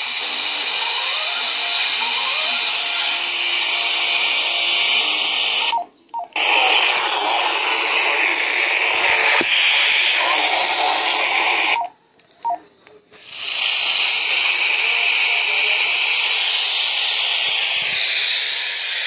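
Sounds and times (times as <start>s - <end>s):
radio static hiss: 0.0s - 5.7s, 6.3s - 11.9s, 13.1s - 19.0s.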